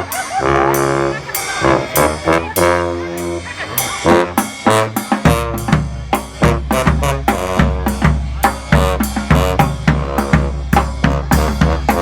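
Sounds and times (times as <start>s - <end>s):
horn notes: 0.0s - 12.0s
street band playing: 0.0s - 12.0s
snare and bass drum groove: 4.0s - 12.0s.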